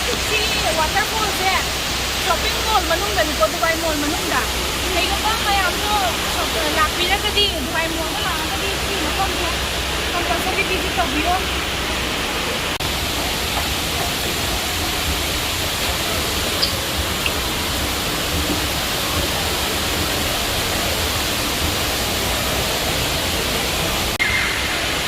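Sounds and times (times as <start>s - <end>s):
waterfall rushing: 0.0s - 25.0s.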